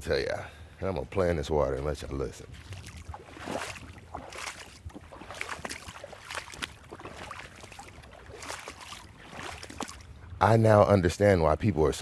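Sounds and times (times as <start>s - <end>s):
creek water flowing: 1.8s - 10.6s
water splashing: 2.4s - 10.5s.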